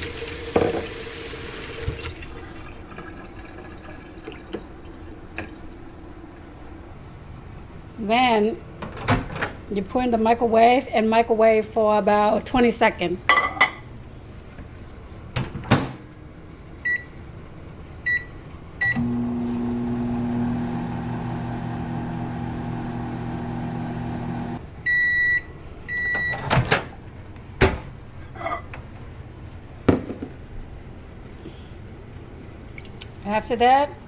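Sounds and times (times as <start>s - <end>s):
microwave oven humming: 14.0s - 29.9s
microwave keypad beeps: 16.8s - 17.1s, 18.0s - 19.0s, 24.9s - 26.5s
microwave finish beeps: 16.8s - 17.2s, 18.0s - 20.4s, 24.8s - 26.5s.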